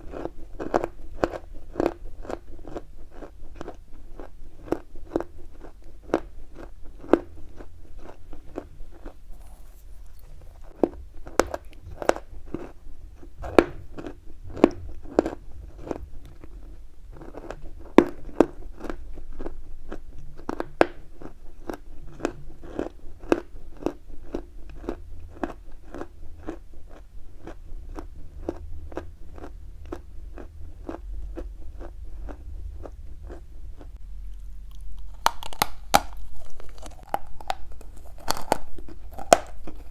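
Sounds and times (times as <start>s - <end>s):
chalk being chewed: 0.0s - 13.3s, 29.4s - 39.9s.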